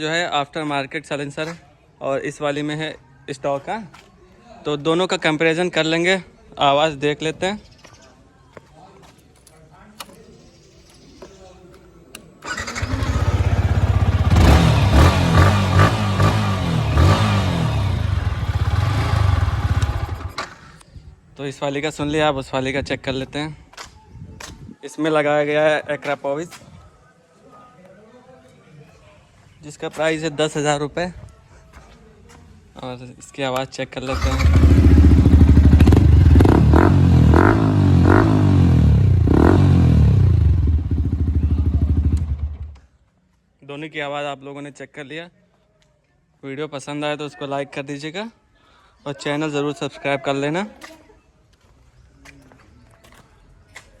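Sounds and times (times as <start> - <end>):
motorcycle engine revving and idling: 12.4 - 20.6, 34.1 - 42.8.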